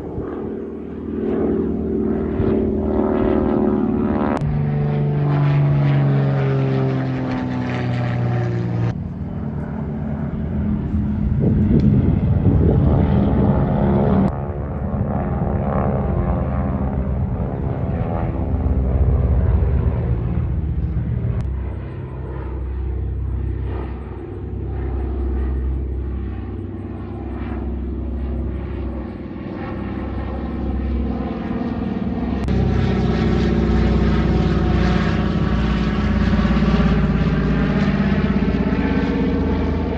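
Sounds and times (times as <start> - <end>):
propeller aircraft droning: 0.0 - 39.9
heavy low rumble: 8.6 - 37.3.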